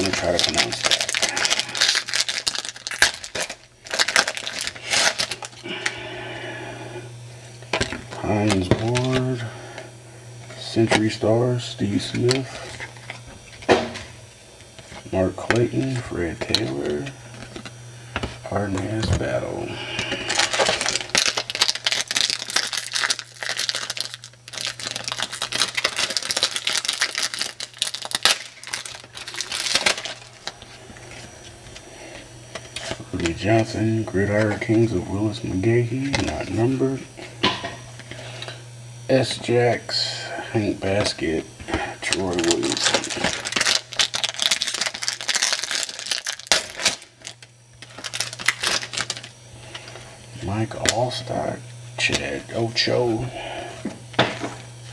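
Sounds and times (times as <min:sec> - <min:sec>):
foil wrapper tearing and crinkling: 0:00.0 - 0:05.9, 0:08.2 - 0:09.2, 0:20.1 - 0:30.8, 0:42.1 - 0:49.3
trading cards rustling and clicking: 0:00.0 - 0:06.0, 0:07.7 - 0:09.4, 0:20.0 - 0:31.8, 0:42.0 - 0:49.3.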